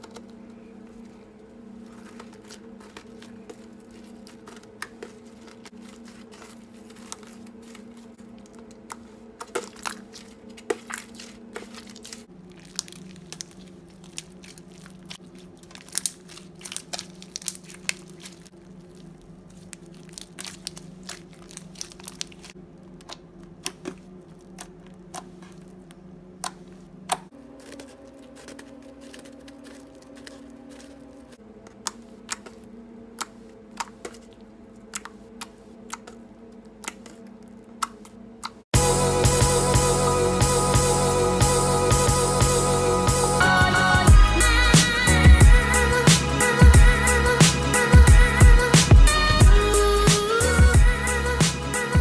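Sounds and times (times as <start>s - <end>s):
steady low hum: 0.0s - 52.0s
slime and snow crackling and popping: 0.9s - 36.2s.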